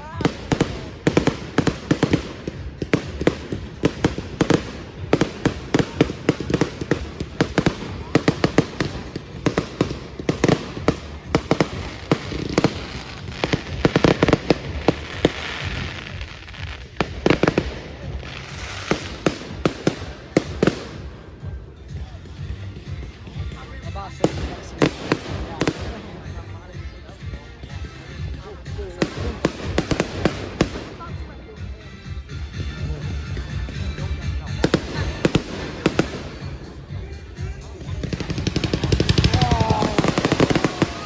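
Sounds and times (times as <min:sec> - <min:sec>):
fireworks hissing: 0:00.0 - 0:21.3, 0:37.6 - 0:41.0
fireworks cracking and banging: 0:00.0 - 0:41.0.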